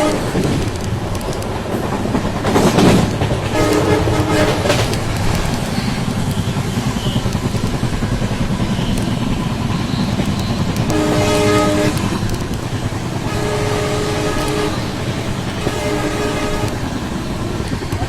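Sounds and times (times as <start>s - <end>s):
locomotive horn: 0.0s - 0.7s, 3.5s - 7.4s, 8.6s - 12.6s, 13.2s - 17.6s
locomotive rumble: 0.0s - 18.0s.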